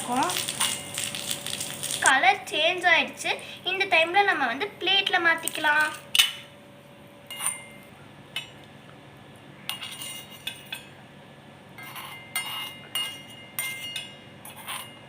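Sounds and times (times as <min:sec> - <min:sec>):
spoon clinking on metal pan: 0:11.8 - 0:15.0.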